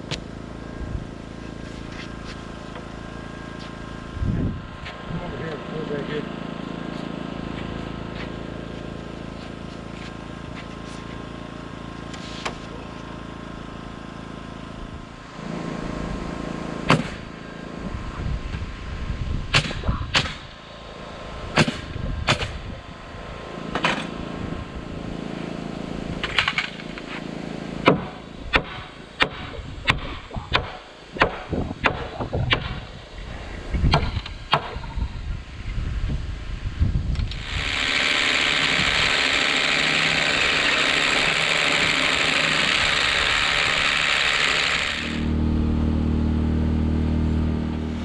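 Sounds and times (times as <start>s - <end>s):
hammer striking nails into wood: 27.8s - 32.8s
low background drone: 43.4s - 48.0s.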